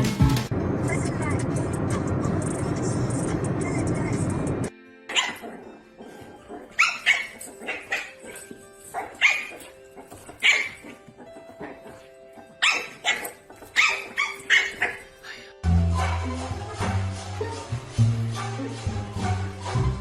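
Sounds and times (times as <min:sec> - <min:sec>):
faint background music: 0:00.0 - 0:20.0
dog barking: 0:05.1 - 0:16.2.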